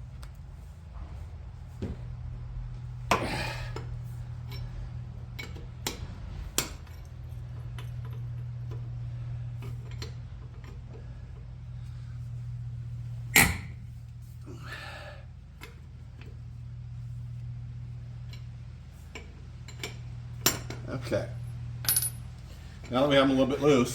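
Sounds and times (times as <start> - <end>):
steady low hum: 0.0 - 23.9
lug wrench clinking on lug nuts: 3.1 - 4.7, 5.3 - 6.0, 18.2 - 20.9, 21.8 - 23.0.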